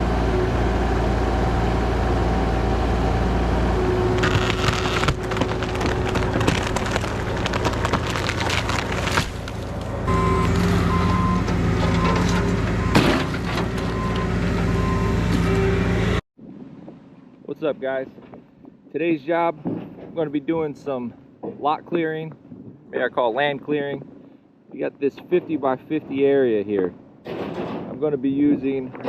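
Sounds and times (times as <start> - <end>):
diesel equipment running: 0.0 - 16.2
wood cracking and snapping: 4.2 - 10.8.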